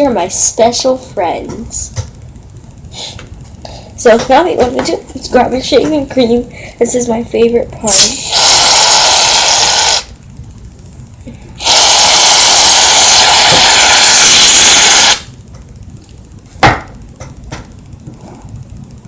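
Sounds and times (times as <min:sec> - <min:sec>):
aerosol can spraying: 0:11.6 - 0:15.3.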